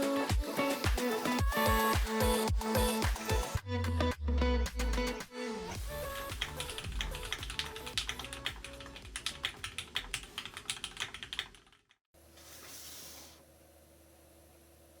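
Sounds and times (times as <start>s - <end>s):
background music: 0.0s - 10.0s
fast typing on mechanical keyboard: 6.5s - 11.8s
faint hiss: 12.3s - 13.5s.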